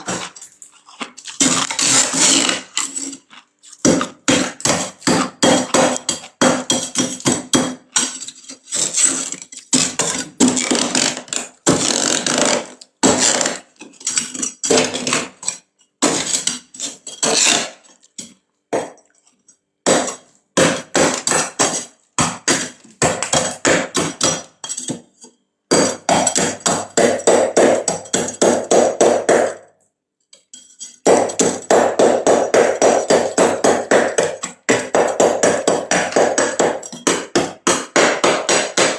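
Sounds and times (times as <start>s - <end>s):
frost being scraped off: 0.0s - 3.8s.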